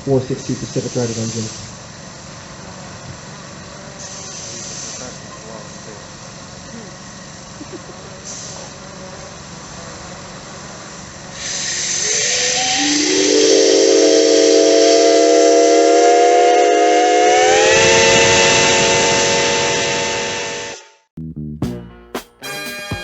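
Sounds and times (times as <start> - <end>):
steam hissing: 0.0 - 20.8
steam whistle chord: 12.0 - 21.0, 22.4 - 23.0.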